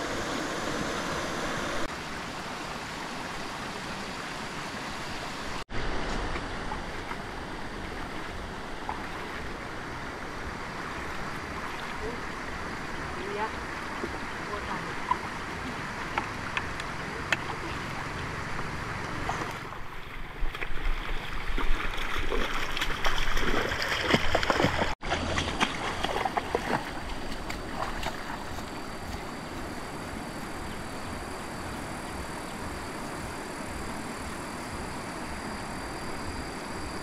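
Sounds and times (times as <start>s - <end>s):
hiss of flowing water: 0.0s - 20.4s
water splashing and sloshing: 0.0s - 34.9s.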